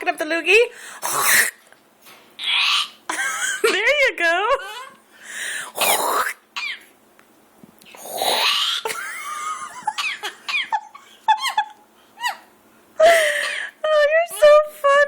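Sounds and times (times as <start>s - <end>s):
parrot raspy throat-clearing: 1.0s - 1.6s, 2.4s - 3.0s, 5.8s - 6.9s, 7.9s - 8.9s
parrot squeaky chattering calls: 2.4s - 3.0s, 5.9s - 6.9s, 8.2s - 8.9s.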